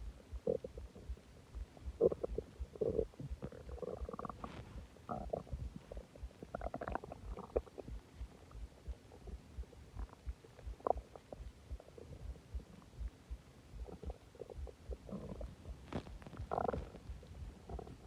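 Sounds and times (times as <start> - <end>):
stomach gurgling and rumbling: 0.0 - 18.0.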